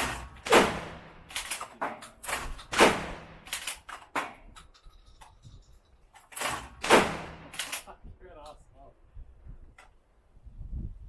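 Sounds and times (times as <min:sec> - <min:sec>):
shotgun shots: 0:00.0 - 0:04.5, 0:06.4 - 0:07.9.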